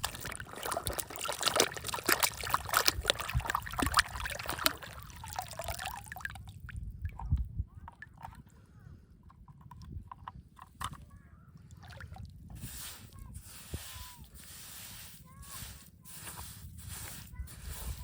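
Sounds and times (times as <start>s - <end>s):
water sloshing and trickling: 0.0s - 18.0s
small clicks and knocks: 9.2s - 11.1s.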